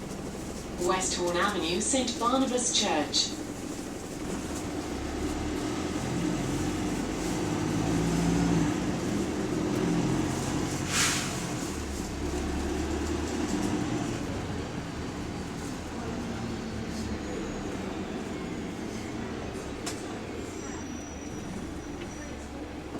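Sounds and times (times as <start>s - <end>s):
bus engine running: 0.0s - 22.9s
air brake hiss: 10.8s - 11.5s.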